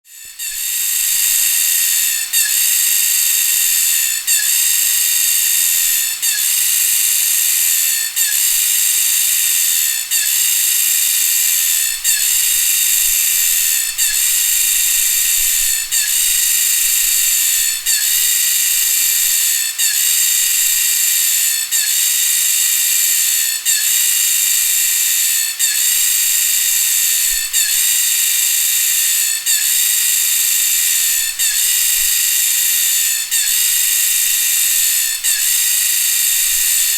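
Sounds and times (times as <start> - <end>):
insect chorus buzzing: 0.1 - 36.9.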